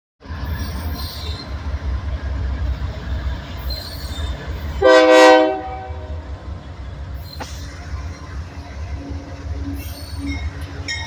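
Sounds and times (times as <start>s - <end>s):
freight train rumbling: 0.2s - 11.0s
wheel squeal: 0.4s - 1.7s, 3.6s - 4.7s, 7.2s - 7.8s, 9.6s - 11.0s
locomotive horn chord: 4.8s - 6.2s.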